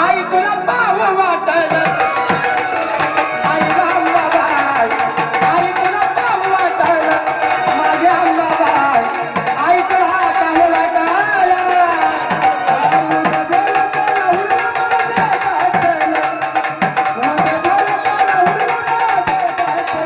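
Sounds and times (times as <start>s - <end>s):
held melodic tone: 1.7s - 14.6s
folk drum rhythm: 1.7s - 20.0s.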